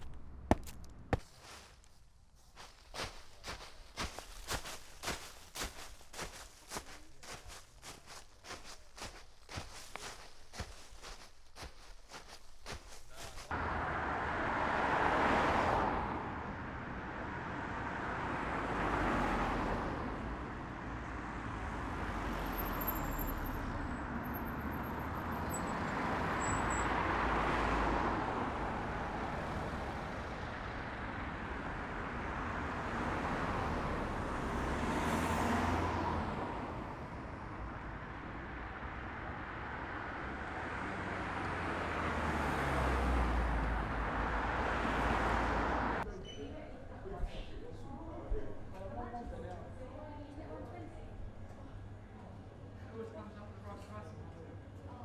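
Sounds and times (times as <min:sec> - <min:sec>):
cars passing: 0:02.6 - 0:46.1.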